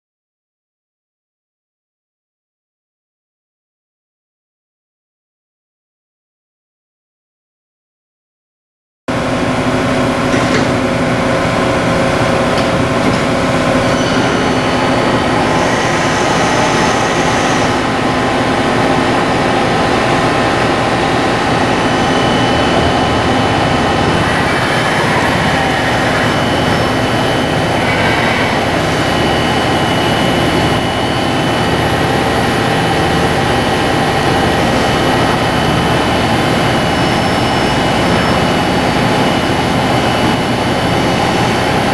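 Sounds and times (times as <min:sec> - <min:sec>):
high machine whine: 0:09.1 - 0:41.9
lathe machine hum: 0:09.1 - 0:41.9.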